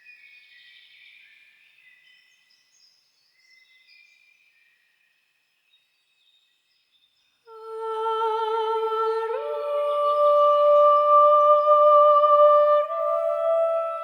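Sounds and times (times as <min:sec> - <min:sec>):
woman humming long notes: 0:07.5 - 0:14.0.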